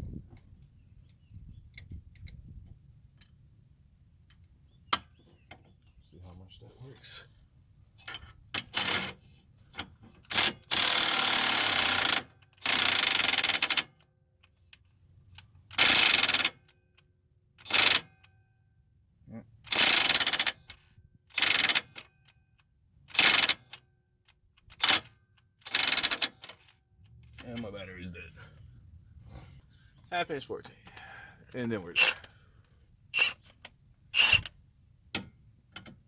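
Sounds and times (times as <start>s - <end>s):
power wrench hammering: 10.3s - 13.8s, 15.7s - 16.5s, 19.7s - 20.6s, 21.3s - 22.0s, 24.8s - 26.6s, 31.9s - 32.4s, 33.2s - 33.6s, 34.2s - 34.5s.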